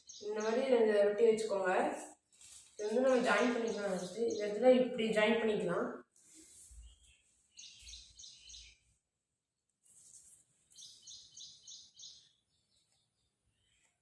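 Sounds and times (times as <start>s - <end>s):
high bird chirps: 0.0s - 0.7s, 2.8s - 4.6s, 6.7s - 8.8s, 10.7s - 13.8s.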